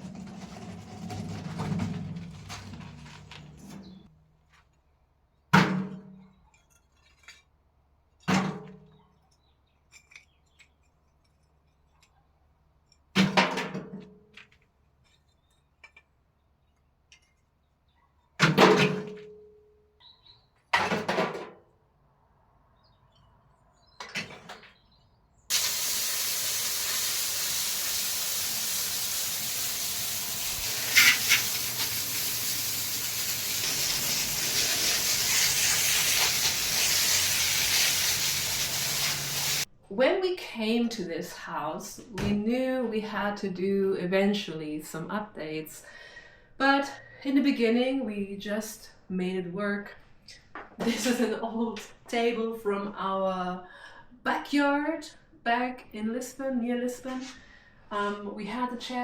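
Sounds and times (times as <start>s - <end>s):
steady hiss: 25.5s - 39.7s.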